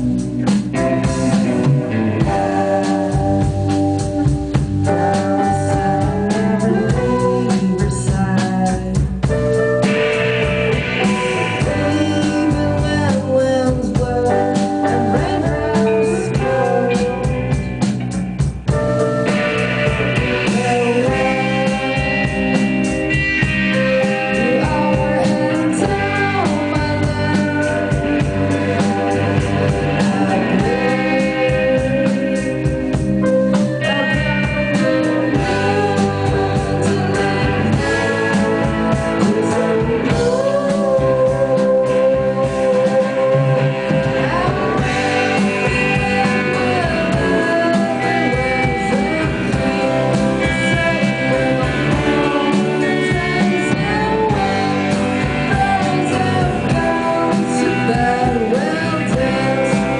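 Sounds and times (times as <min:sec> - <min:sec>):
rock band playing: 0:00.0 - 0:59.9.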